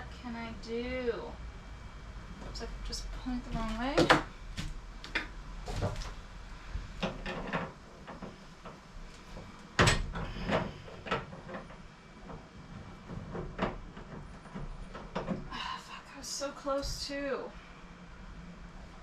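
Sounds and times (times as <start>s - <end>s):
knocks and clunks on pipe: 3.2s - 6.2s, 7.0s - 8.8s, 13.0s - 15.5s.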